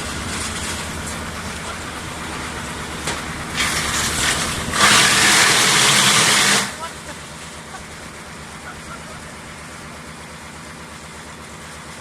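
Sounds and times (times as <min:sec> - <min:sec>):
wood chipper engine rumbling: 0:00.0 - 0:12.0.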